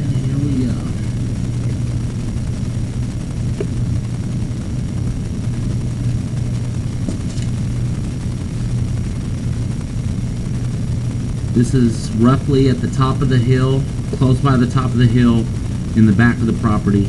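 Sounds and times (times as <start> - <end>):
motor droning: 0.0 - 17.0.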